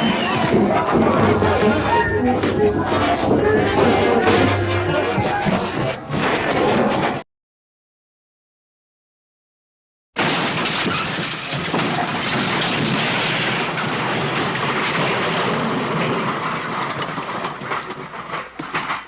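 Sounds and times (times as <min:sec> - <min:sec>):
cartoon fight crashing and banging: 0:10.2 - 0:19.0.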